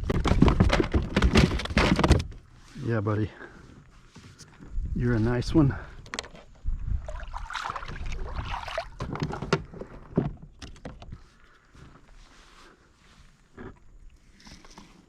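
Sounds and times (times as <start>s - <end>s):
knocks and taps of gear: 6.0s - 6.4s, 9.0s - 11.2s.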